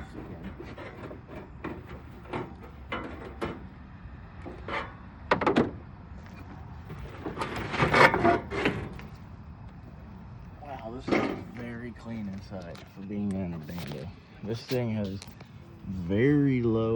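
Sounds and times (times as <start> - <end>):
sheet-metal cabinet clattering: 7.1 - 9.0.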